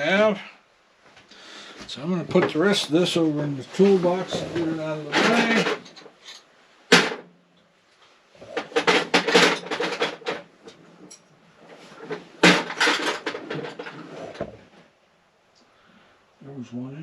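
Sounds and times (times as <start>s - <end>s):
metal tools clattering into toolbox: 4.3s - 7.2s, 8.4s - 11.3s, 11.9s - 14.4s.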